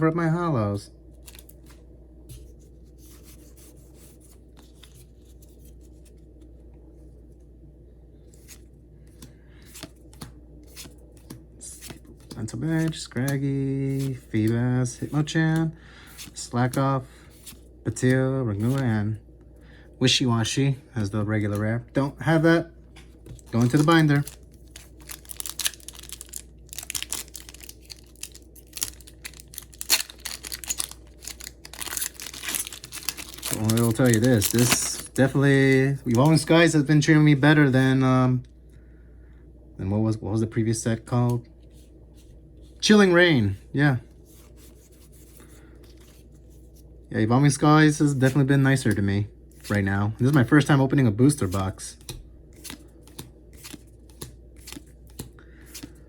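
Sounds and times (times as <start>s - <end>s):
steady low hum: 0.0s - 56.0s
trading cards sliding and rubbing: 1.3s - 6.2s, 8.3s - 13.1s, 13.8s - 15.4s, 16.1s - 18.9s, 29.2s - 36.5s, 44.2s - 46.8s
foil wrapper crinkling: 23.3s - 36.5s.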